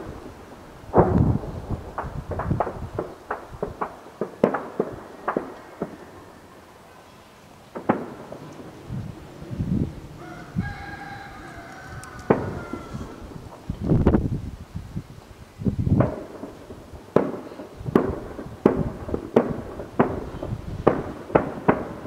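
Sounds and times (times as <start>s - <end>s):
distant shelling and gunfire: 0.9s - 6.3s, 7.7s - 8.8s, 12.1s - 13.6s, 16.0s - 22.0s
rooster crowing: 10.1s - 13.4s.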